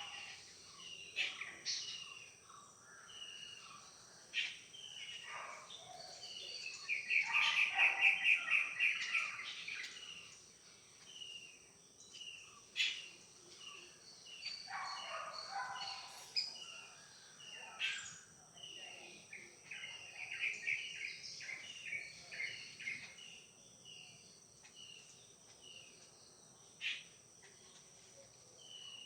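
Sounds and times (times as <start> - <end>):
birds chirping: 12.0 - 26.3.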